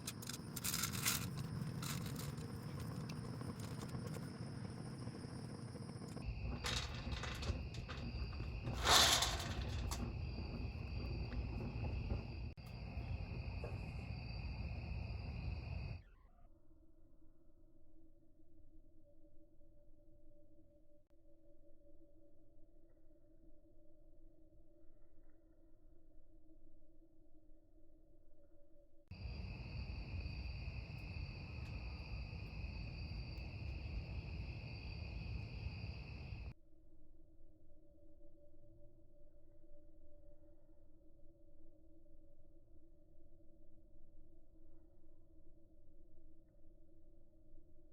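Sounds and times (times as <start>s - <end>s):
wood fire crackling: 0.0s - 14.1s
crickets chirring: 0.0s - 16.3s, 29.1s - 36.6s
low rumbling noise: 2.6s - 16.0s.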